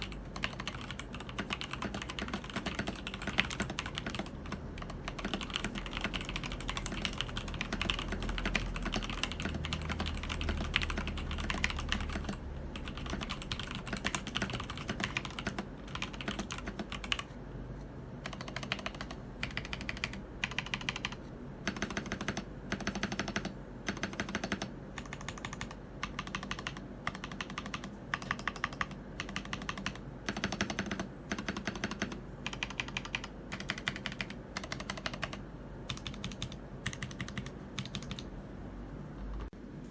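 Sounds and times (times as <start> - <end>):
mechanical keyboard typing: 0.0 - 17.4, 18.2 - 38.3.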